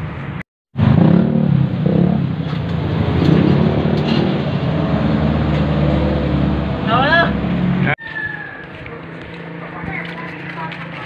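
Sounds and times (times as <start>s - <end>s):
vehicle engine droning: 0.8s - 8.0s.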